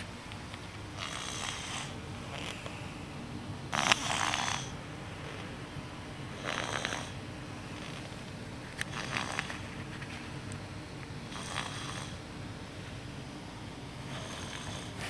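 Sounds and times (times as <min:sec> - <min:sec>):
baby snoring: 0:01.0 - 0:02.7, 0:03.7 - 0:04.8, 0:06.4 - 0:07.2, 0:08.9 - 0:09.5, 0:11.3 - 0:12.2, 0:14.1 - 0:15.0.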